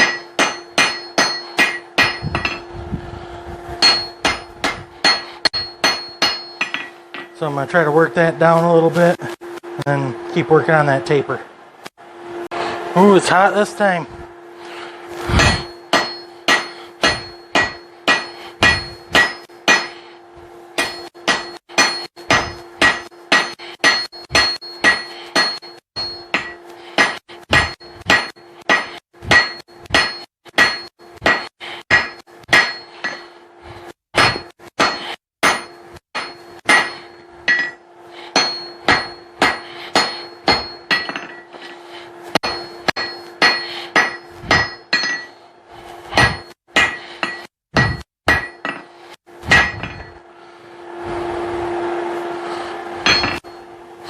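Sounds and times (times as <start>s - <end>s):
hammer clanging on anvil: 0.0s - 2.7s, 3.8s - 9.1s, 15.3s - 20.2s, 20.8s - 33.4s, 34.2s - 45.4s, 46.1s - 50.2s, 53.0s - 53.7s.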